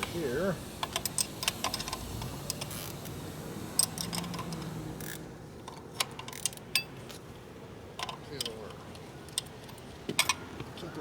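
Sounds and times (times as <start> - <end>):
small parts clicking and tapping: 0.8 - 3.2, 3.8 - 6.9, 8.0 - 10.4.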